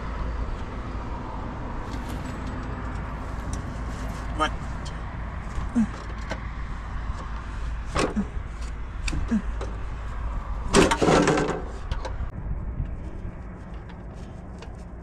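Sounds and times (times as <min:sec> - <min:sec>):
steady low rumble: 0:00.0 - 0:15.0
clattering scrape: 0:10.7 - 0:12.3.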